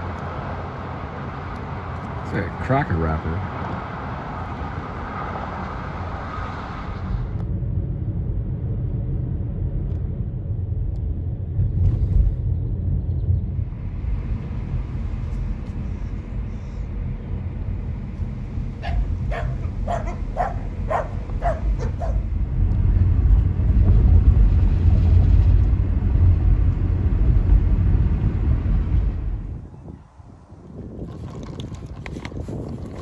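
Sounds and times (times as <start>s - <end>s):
low rumble: 5.5s - 30.9s
dog barking: 18.8s - 22.4s.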